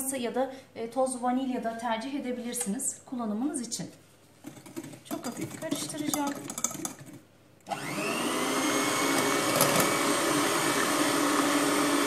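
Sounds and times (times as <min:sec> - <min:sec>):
electric hand mixer whine: 0:07.6 - 0:12.0.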